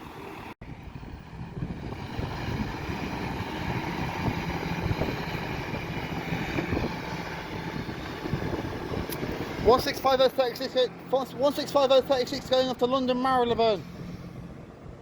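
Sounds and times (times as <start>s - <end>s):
diesel train engine rumble: 0.0s - 15.0s
wind on microphone: 0.6s - 10.2s.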